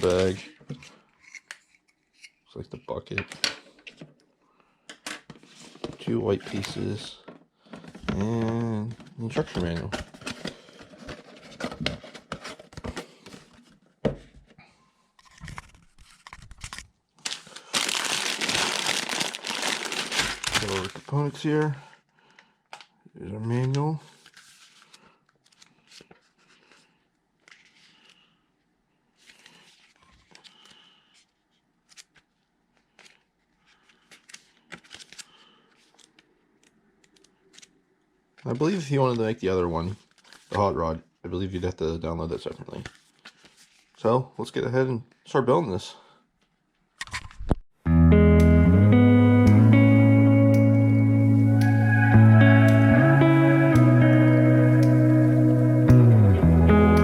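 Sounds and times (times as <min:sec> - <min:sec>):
paper and plastic rustling: 0:00.0 - 0:01.0, 0:05.3 - 0:13.9, 0:15.2 - 0:22.4, 0:23.5 - 0:28.3, 0:29.2 - 0:37.8, 0:38.4 - 0:40.8, 0:42.4 - 0:44.0
plastic bags crinkling: 0:17.2 - 0:21.5.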